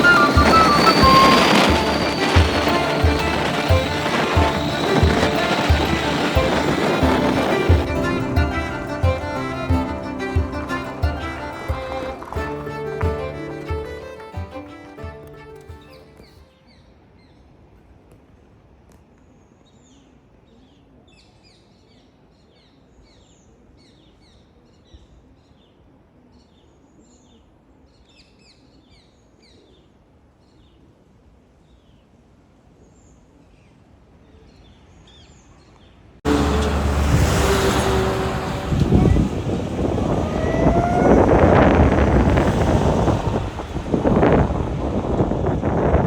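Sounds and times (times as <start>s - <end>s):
loud rushing noise: 0.0s - 16.1s, 36.3s - 46.0s.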